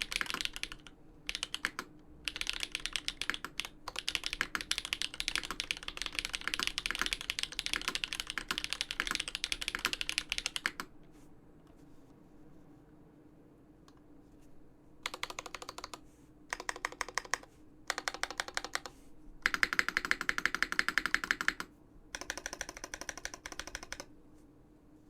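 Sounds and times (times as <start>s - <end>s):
fast typing on mechanical keyboard: 0.0s - 10.9s, 15.0s - 24.1s.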